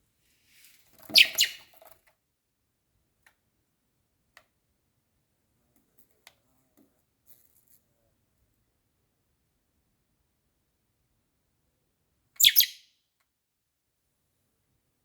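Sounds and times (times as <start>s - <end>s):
baby bird sharp chirps: 1.1s - 1.7s, 12.4s - 12.9s.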